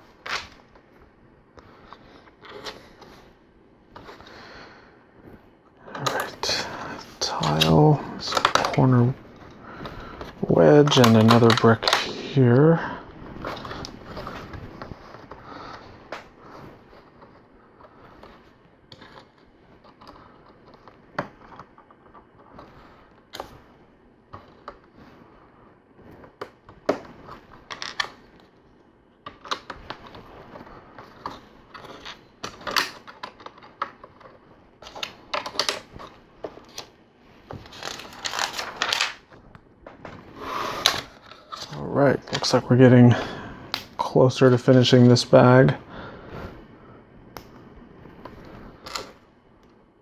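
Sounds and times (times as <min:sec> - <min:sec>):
plastic bricks clicking and clattering: 0:10.8 - 0:12.1.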